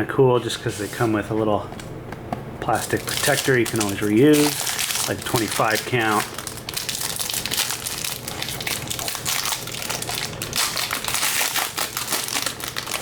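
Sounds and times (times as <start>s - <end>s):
plastic wrapping crinkling: 2.7s - 13.0s.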